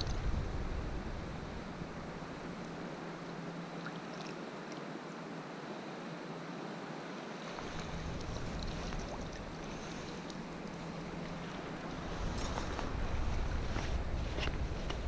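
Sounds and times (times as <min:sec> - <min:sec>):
stream water over rocks: 0:01.8 - 0:13.0.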